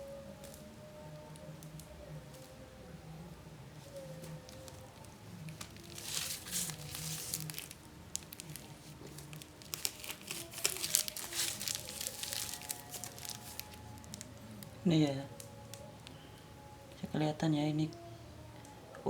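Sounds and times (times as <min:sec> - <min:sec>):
plastic packaging crinkling: 0:03.8 - 0:16.2.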